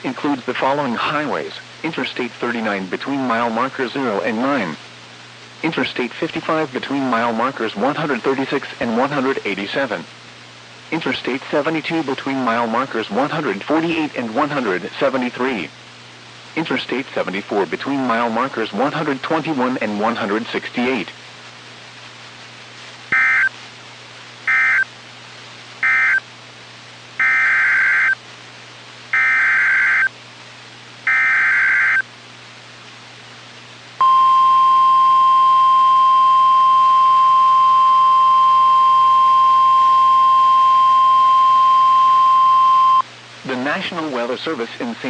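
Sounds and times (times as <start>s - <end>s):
digital data bursts: 23.1s - 23.5s, 24.5s - 24.9s, 25.8s - 26.2s, 27.2s - 28.2s, 29.2s - 30.1s, 31.1s - 32.0s
steady warning alarm tone: 23.1s - 23.5s, 24.5s - 24.9s, 25.8s - 26.2s, 27.2s - 28.2s, 29.2s - 30.1s, 31.1s - 32.0s, 34.0s - 43.0s.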